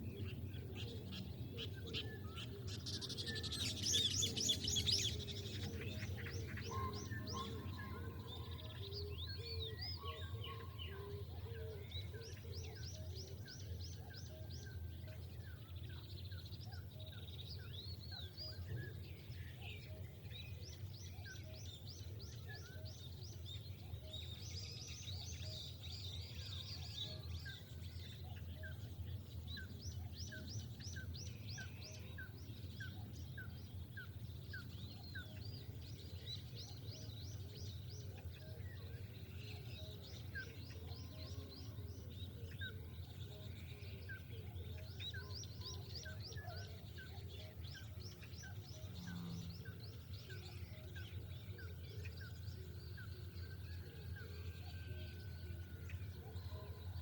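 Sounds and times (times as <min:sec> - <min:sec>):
birds trilling: 0:00.0 - 0:15.9
birds chirping: 0:00.0 - 0:57.0.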